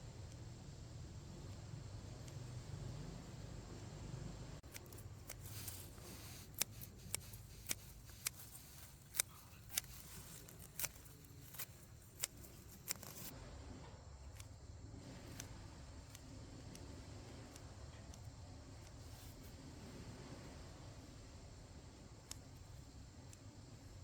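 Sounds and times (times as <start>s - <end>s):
faint low hum: 0.0s - 24.0s
short sharp snips: 4.6s - 13.3s.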